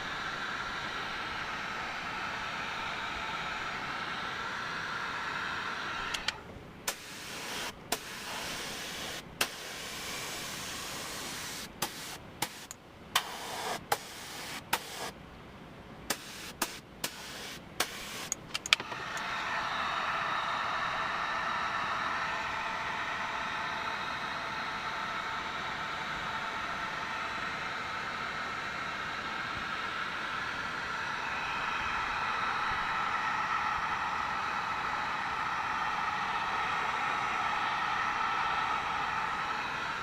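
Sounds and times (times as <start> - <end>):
air dryer blowing: 0.0 - 15.2, 16.1 - 40.0
air hissing: 0.2 - 15.2, 16.1 - 18.4
sharp clicks: 18.3 - 19.0.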